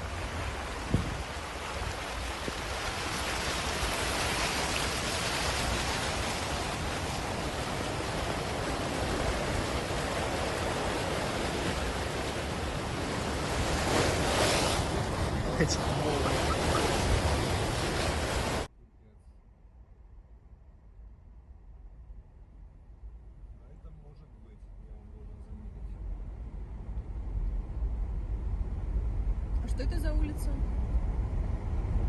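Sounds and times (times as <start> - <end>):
rushing floodwater: 0.0 - 18.7.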